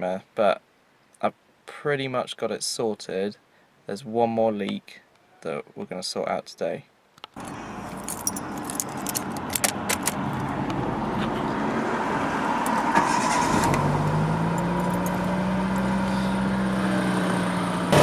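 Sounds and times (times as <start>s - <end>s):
light clicks and jangles: 7.4s - 10.2s, 14.6s - 15.3s
car engine idling: 7.4s - 18.0s.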